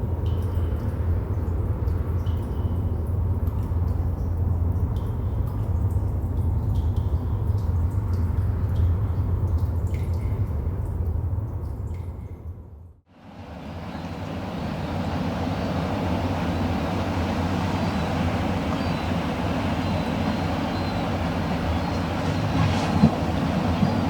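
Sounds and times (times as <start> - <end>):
wind and sea rumbling in cave: 0.0 - 24.0.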